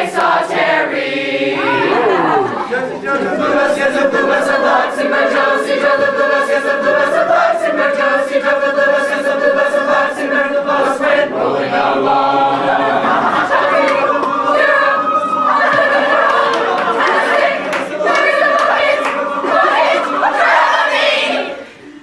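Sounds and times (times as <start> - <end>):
group singing loudly: 0.0 - 21.7
people shouting: 1.4 - 2.8.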